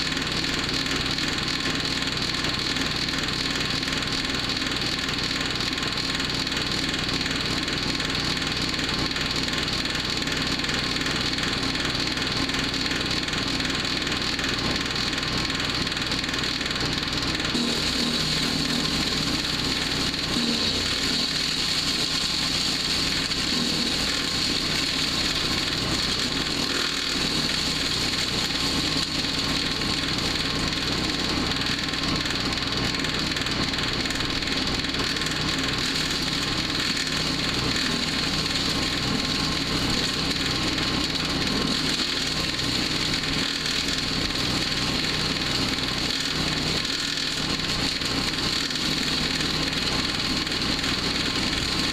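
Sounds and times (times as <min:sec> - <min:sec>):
wood chipper engine running: 0:00.0 - 0:51.9.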